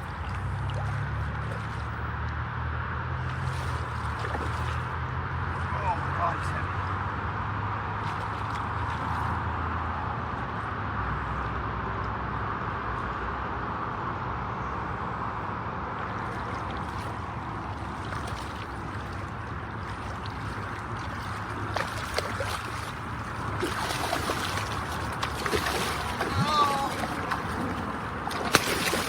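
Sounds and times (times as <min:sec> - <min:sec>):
splashes: 0:00.0 - 0:02.4, 0:03.1 - 0:09.8, 0:15.9 - 0:29.0
water sloshing around boat: 0:00.0 - 0:13.6, 0:14.5 - 0:29.0.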